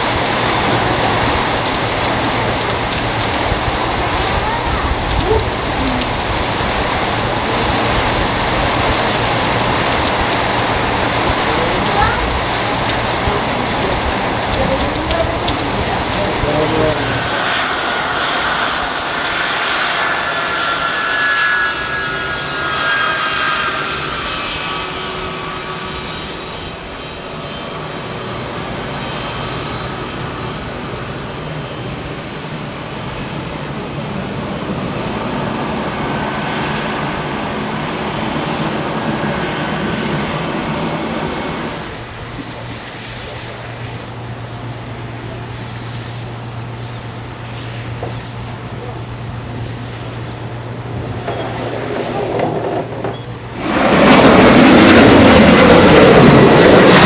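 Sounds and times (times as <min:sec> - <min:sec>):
heavy rain falling: 0:00.0 - 0:20.0, 0:50.6 - 0:57.0
jet airliner engines whining: 0:00.0 - 0:57.0.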